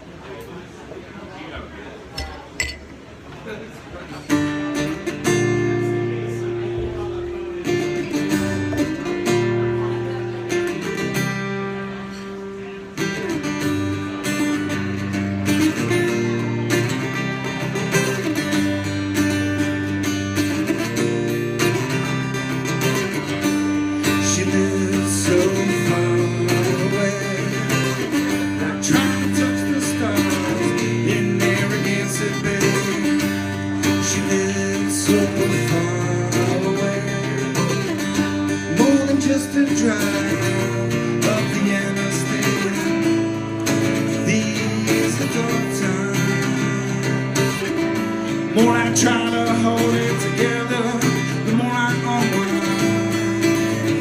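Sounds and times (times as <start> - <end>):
acoustic guitar strumming chords: 4.2 - 54.0.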